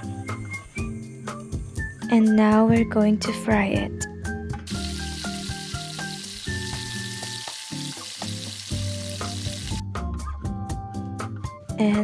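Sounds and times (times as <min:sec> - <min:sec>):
background music: 0:00.0 - 0:12.0
hot oil sizzling: 0:04.7 - 0:09.8.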